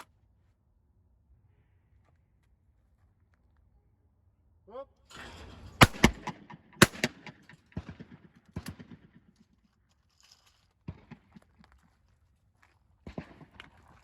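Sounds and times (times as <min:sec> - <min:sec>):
shotgun shots: 0:05.2 - 0:09.2.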